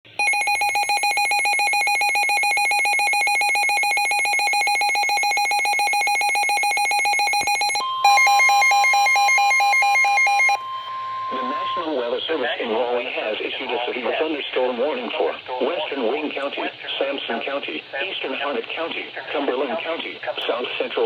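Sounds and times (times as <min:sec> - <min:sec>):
steady long alarm tone: 0:00.2 - 0:12.6.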